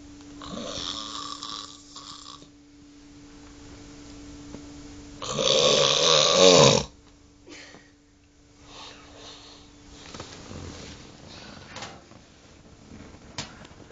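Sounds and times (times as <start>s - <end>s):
person snoring: 0.4s - 2.5s, 5.2s - 6.9s.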